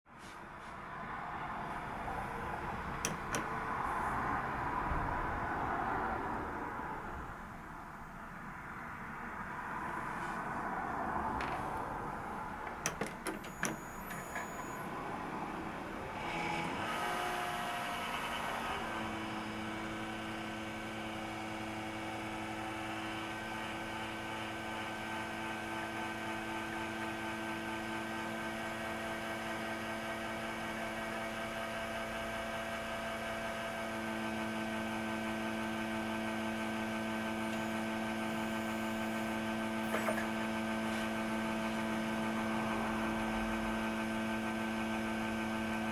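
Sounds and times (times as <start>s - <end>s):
computer fans humming: 0.8s - 20.2s.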